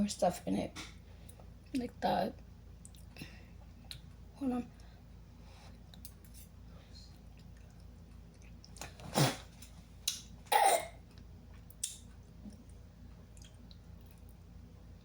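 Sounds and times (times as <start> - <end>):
woman coughing: 10.5 - 11.0.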